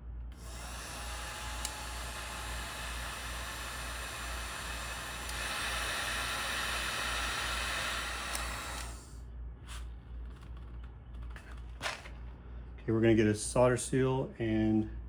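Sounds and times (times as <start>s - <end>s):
heat gun blowing hiss: 0.3s - 9.2s.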